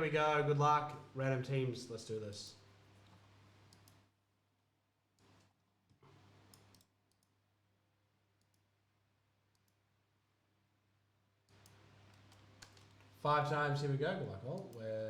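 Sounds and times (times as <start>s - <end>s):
computer mouse clicks: 3.0s - 4.1s, 5.2s - 7.4s, 8.4s - 8.7s, 9.5s - 9.8s, 11.5s - 13.1s, 14.5s - 14.8s.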